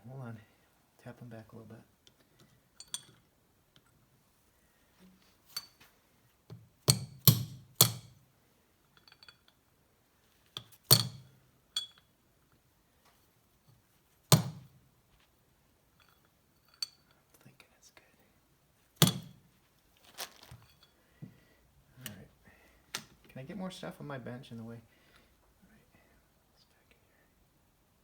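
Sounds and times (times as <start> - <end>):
hammer tapping on metal: 6.9 - 8.2, 19.0 - 19.4.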